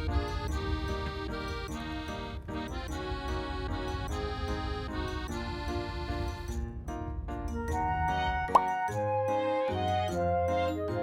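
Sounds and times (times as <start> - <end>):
background music melody: 0.0 - 11.0
low rumble: 0.1 - 8.5.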